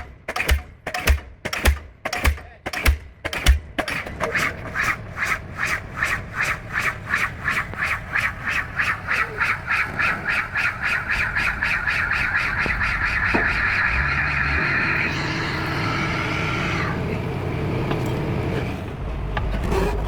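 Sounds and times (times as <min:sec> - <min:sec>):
pile hammer blows: 0:00.0 - 0:15.8.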